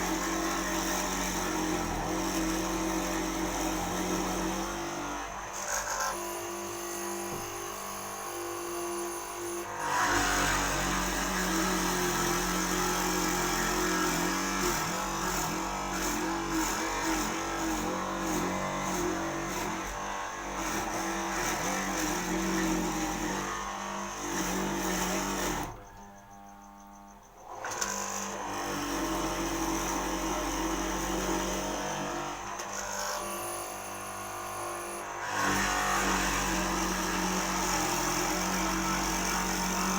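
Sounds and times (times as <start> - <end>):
electric motor running: 0.0 - 26.2
machine cutting into timber: 9.8 - 26.0.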